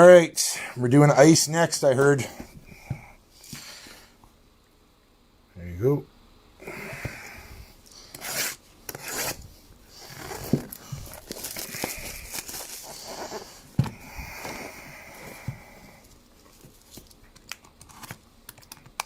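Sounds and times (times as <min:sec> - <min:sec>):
hands rustling card packs: 0:07.9 - 0:19.0.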